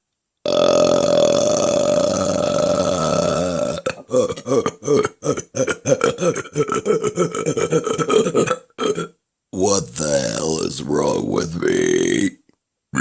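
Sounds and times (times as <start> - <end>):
short choppy burps: 0.5 - 9.2
woman belching: 0.5 - 9.2.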